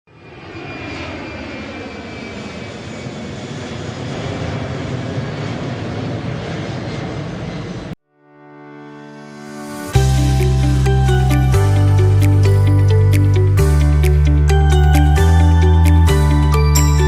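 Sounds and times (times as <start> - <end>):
aeroplane flying past: 0.1 - 8.0
soft music: 8.1 - 17.0.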